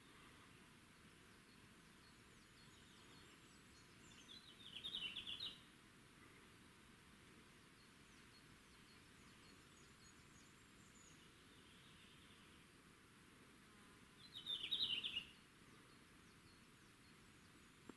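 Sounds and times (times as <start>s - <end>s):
faint high bird chirps: 1.4s - 5.7s, 14.2s - 17.8s.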